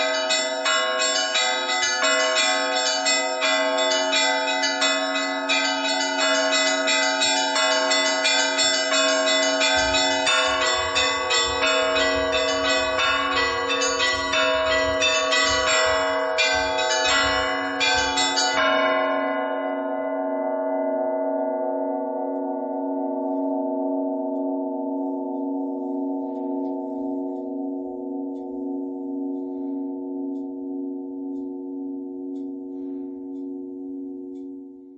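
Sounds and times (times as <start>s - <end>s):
church bells pealing: 0.0s - 34.7s.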